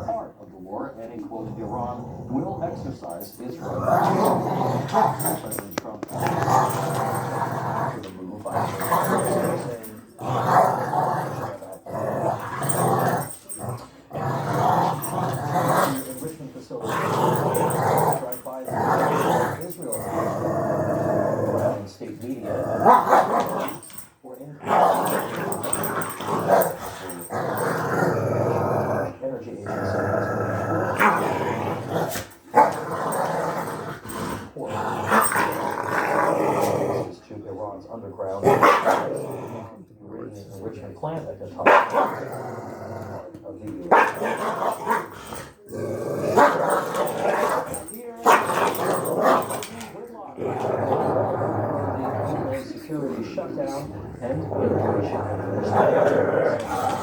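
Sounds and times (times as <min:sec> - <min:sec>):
dog growling: 0:01.2 - 0:57.0
dog barking: 0:22.8 - 0:23.5, 0:38.5 - 0:39.1, 0:41.6 - 0:42.2, 0:43.9 - 0:45.1, 0:46.4 - 0:49.5.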